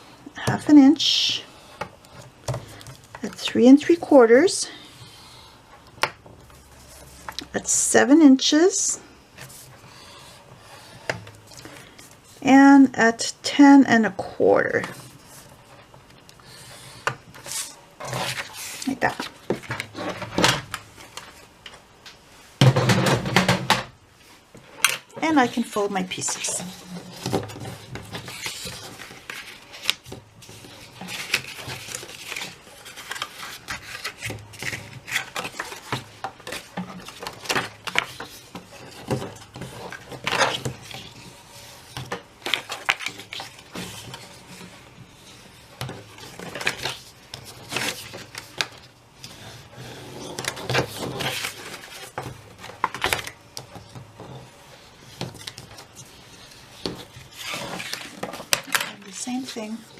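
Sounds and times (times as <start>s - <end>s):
paper box pieces being folded: 25.4s - 59.9s.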